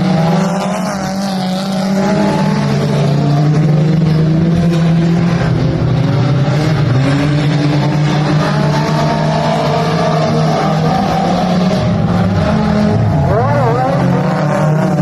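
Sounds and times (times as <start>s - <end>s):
race car engines revving: 0.0s - 15.0s.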